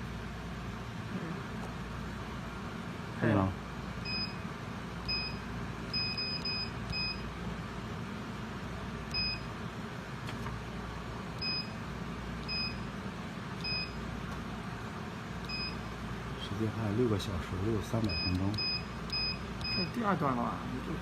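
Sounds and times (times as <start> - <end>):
steady low hum: 0.0 - 21.0
electronic key-press beeps: 4.1 - 4.4, 5.0 - 7.2, 9.1 - 9.5, 11.4 - 11.8, 12.4 - 12.8, 13.6 - 14.0, 15.4 - 15.8, 18.0 - 19.9.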